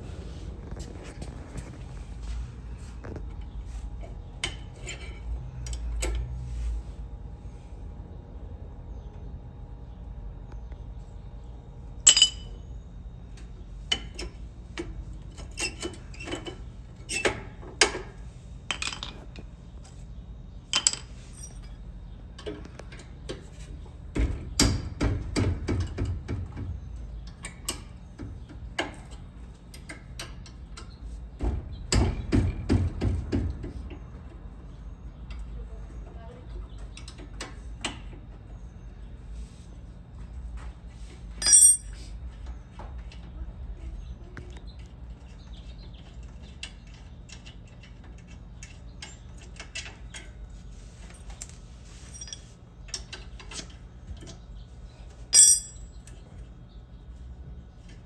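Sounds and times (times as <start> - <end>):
metallic clinks and knocks: 41.4 - 42.0, 51.2 - 52.5, 55.3 - 56.2.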